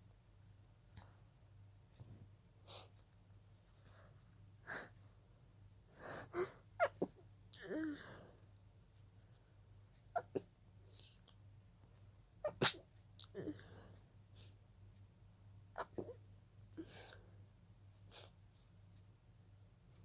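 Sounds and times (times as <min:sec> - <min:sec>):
stifled sneezes: 0:12.5 - 0:13.5.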